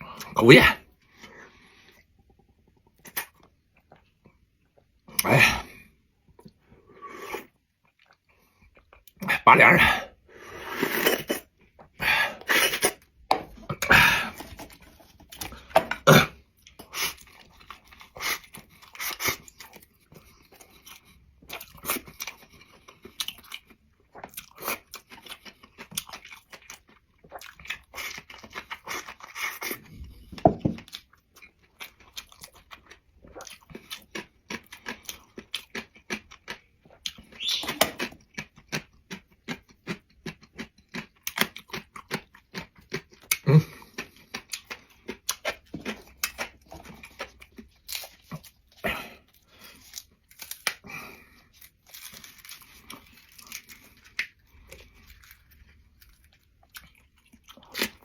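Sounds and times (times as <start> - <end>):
person chewing crunchily: 0.0 - 58.0.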